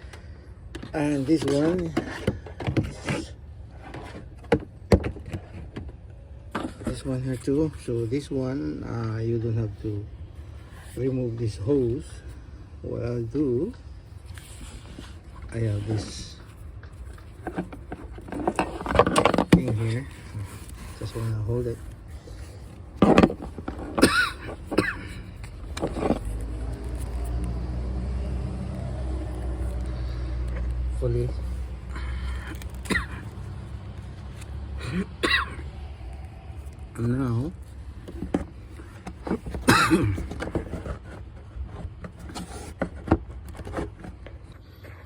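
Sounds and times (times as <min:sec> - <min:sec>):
vehicle engine humming: 0:12.4 - 0:41.7.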